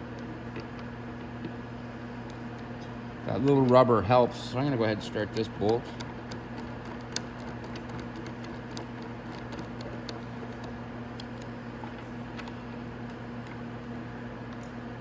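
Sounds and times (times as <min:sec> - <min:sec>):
steady hum: 0:00.0 - 0:15.0
light clicks of bolt threading: 0:05.3 - 0:13.6.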